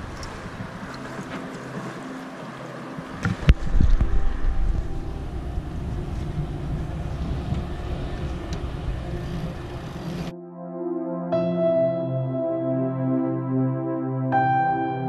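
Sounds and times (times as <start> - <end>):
wind buffeting microphone: 0.0 - 10.3
soft background music: 0.0 - 15.0.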